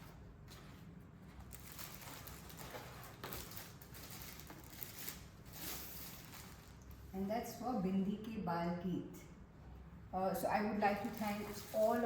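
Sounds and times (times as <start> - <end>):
low room hiss: 0.0 - 12.0
packaging rustling and crinkling: 1.3 - 7.1, 10.9 - 12.0.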